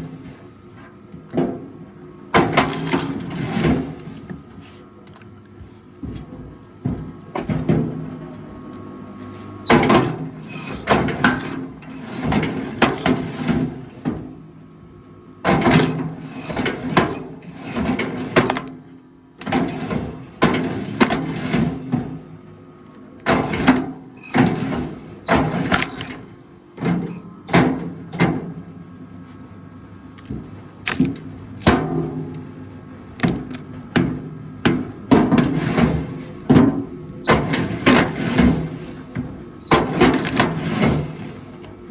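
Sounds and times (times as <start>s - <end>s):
wood creaking and squealing: 25.7s - 27.4s.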